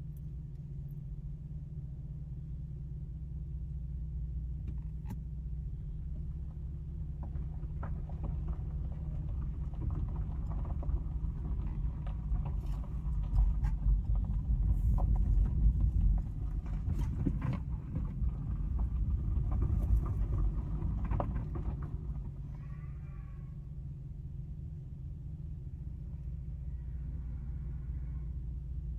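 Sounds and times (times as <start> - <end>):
low car rumble: 0.0 - 28.9
hooves clopping on road: 6.5 - 22.5.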